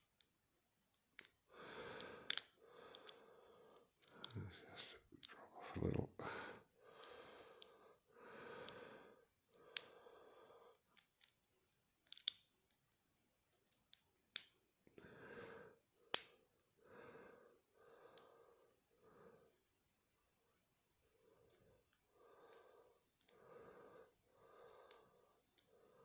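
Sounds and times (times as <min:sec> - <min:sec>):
soft lock picking sounds: 0:00.1 - 0:01.4, 0:02.0 - 0:05.4, 0:10.6 - 0:14.6, 0:24.9 - 0:25.7
lock pick metallic clicks: 0:02.0 - 0:03.2, 0:12.0 - 0:12.4.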